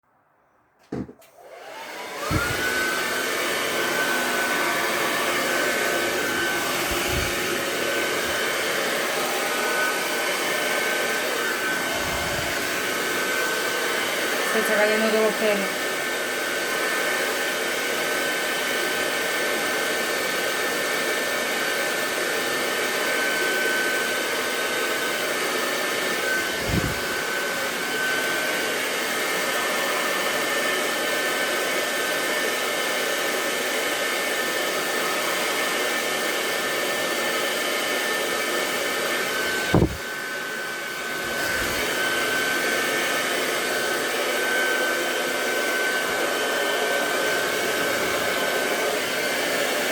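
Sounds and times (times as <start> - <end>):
knocks: 0.8 - 1.2
hair dryer blowing: 0.8 - 49.9.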